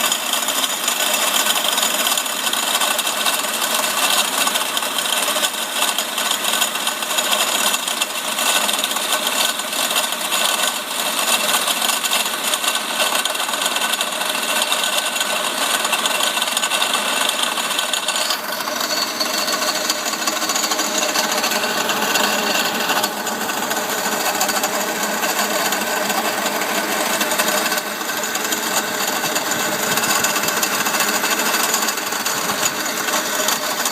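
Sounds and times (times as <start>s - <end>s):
hydraulic pump rattling: 0.0s - 33.9s
car engine running: 0.2s - 33.9s.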